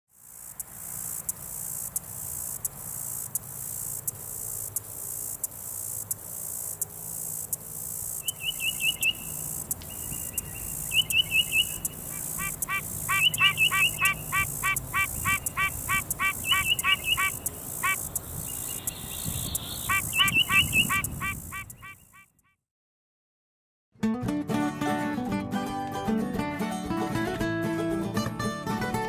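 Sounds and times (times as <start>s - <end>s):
insect trill pulsing: 0.1s - 22.2s
quick chirp runs: 0.2s - 22.4s
songbird whistled notes: 8.2s - 22.2s.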